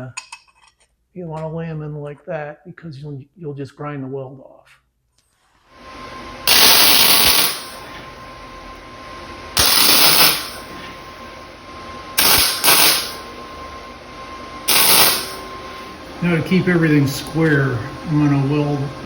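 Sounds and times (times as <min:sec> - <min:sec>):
welder humming: 0:05.7 - 0:19.0
welder crackling: 0:06.0 - 0:08.9, 0:09.5 - 0:11.5, 0:12.1 - 0:13.5, 0:14.6 - 0:19.0.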